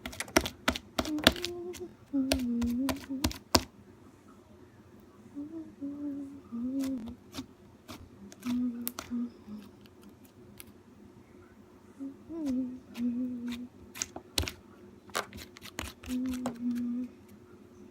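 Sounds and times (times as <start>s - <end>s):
person humming: 1.0s - 3.5s, 5.3s - 7.2s, 8.3s - 9.7s, 12.0s - 13.7s, 15.8s - 17.3s.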